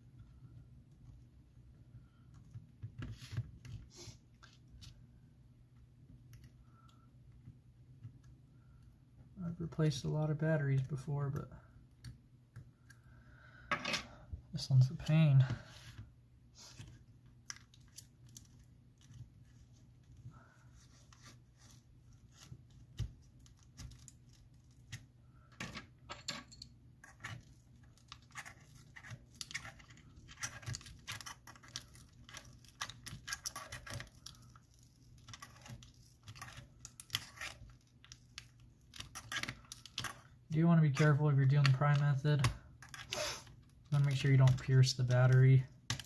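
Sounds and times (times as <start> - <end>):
adhesive cracking: 27.0 - 46.0.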